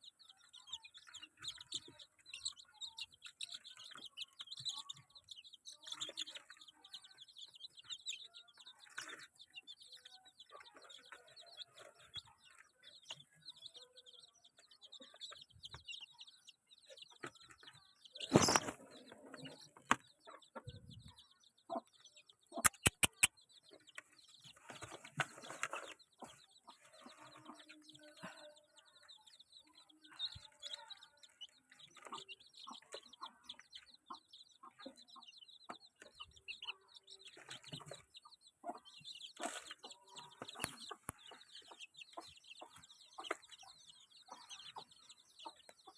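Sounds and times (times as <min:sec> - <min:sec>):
chickens clucking: 0:00.0 - 0:45.9
movement sounds: 0:18.2 - 0:20.0
wings flapping: 0:18.3 - 0:18.8
sharp clicks: 0:22.6 - 0:23.3.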